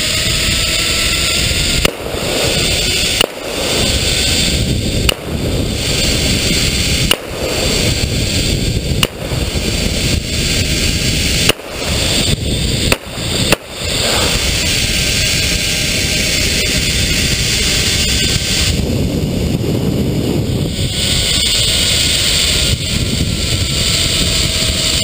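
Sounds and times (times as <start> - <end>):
wind rushing: 0.0 - 25.0
zipline trolley rolling on cable: 0.0 - 25.0
sharp cracks: 1.3 - 16.5.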